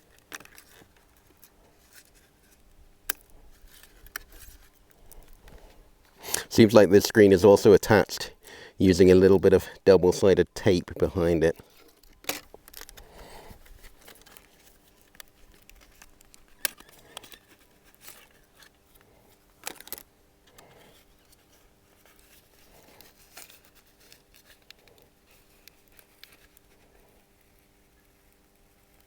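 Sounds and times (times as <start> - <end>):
tape peeling: 11.9 - 28.5.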